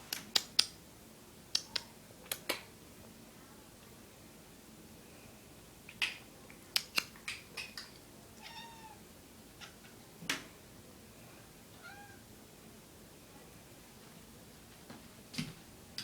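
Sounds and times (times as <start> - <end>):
cat meowing: 8.4 - 9.0, 11.8 - 12.2.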